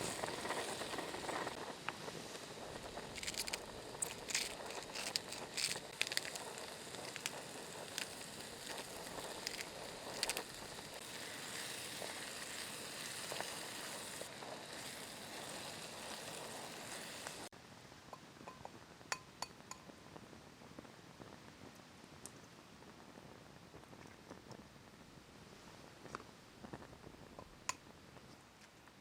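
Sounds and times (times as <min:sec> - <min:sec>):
campfire crackling and snapping: 0:00.0 - 0:17.5
sizzling hiss: 0:00.0 - 0:17.5.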